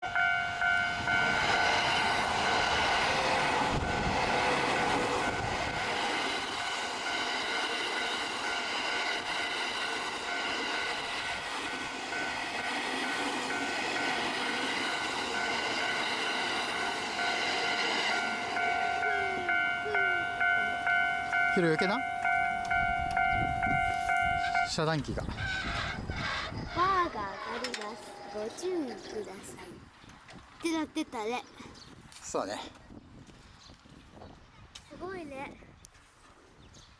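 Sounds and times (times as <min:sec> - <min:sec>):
level crossing warning bell: 0:00.0 - 0:24.9, 0:27.4 - 0:29.0
train rumble: 0:00.0 - 0:29.8.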